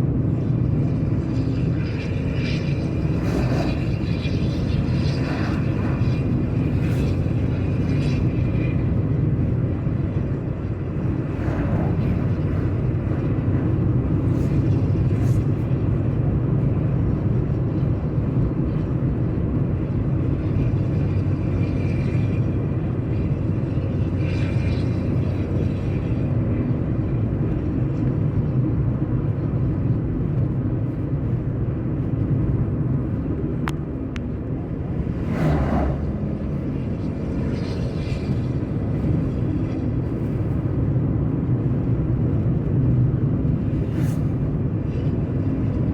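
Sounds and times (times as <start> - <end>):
whoosh: 34.8 - 37.0.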